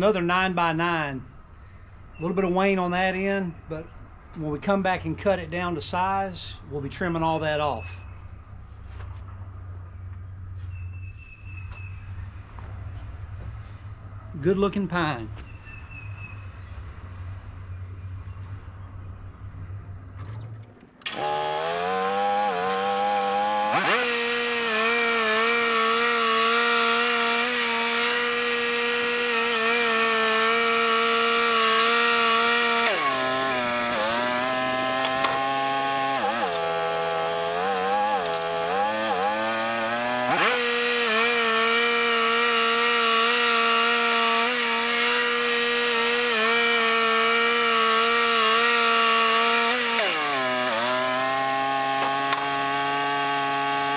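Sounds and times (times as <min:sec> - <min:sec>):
band blade cutting log: 0:20.2 - 0:53.9
bandsaw mill engine running: 0:20.2 - 0:53.9.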